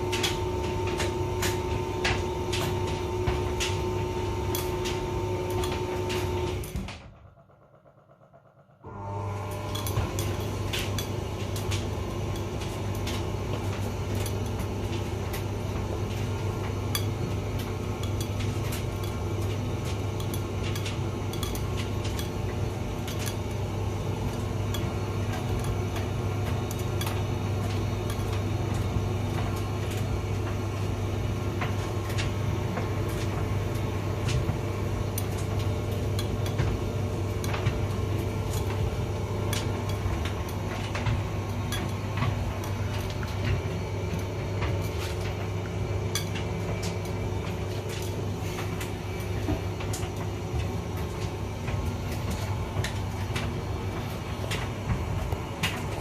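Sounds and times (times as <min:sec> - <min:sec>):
load clicking in dryer drum: 0:00.0 - 0:07.1
tumble dryer humming: 0:00.0 - 0:56.0.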